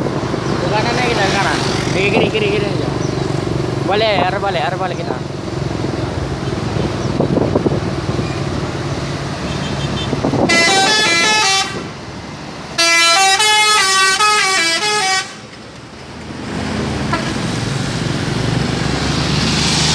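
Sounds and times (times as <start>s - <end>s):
low vehicle engines running: 0.0s - 19.9s
multi-tone musical air horn: 10.4s - 11.9s, 12.8s - 15.4s.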